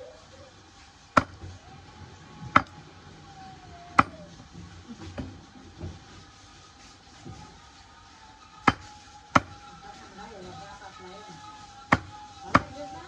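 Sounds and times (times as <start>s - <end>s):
blade chopping bamboo: 1.1s - 1.5s, 2.5s - 2.7s, 3.9s - 4.2s, 8.6s - 9.7s, 11.8s - 13.0s.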